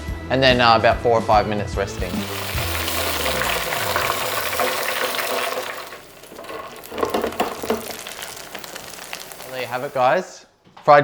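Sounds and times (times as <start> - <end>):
food deep-frying in hot oil: 1.9 - 10.2.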